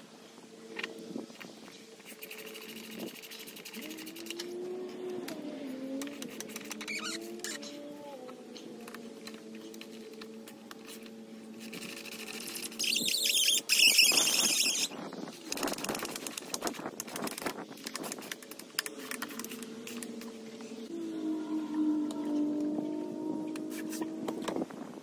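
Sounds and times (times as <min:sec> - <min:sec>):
steady low hum: 0:00.0 - 0:13.2
clicks and knocks of handled parts: 0:15.4 - 0:20.7.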